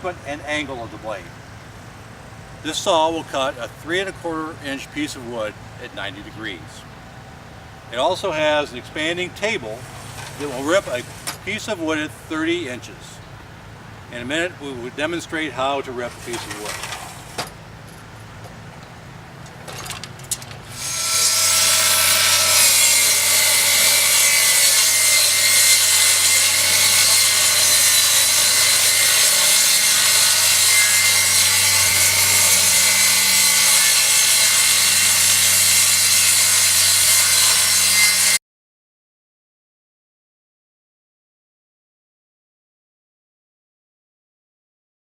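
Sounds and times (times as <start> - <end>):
table saw ripping wood: 16.1 - 17.5, 19.7 - 38.4.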